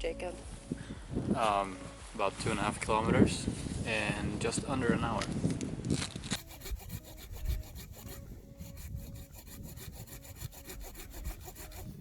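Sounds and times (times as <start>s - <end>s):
saw cutting wood: 6.3s - 12.0s.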